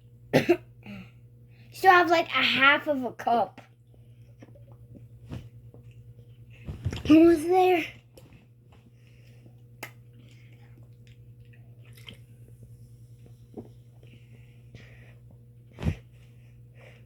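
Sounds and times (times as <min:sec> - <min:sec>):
steady low hum: 0:00.0 - 0:17.0
person sipping and swallowing: 0:09.8 - 0:12.4.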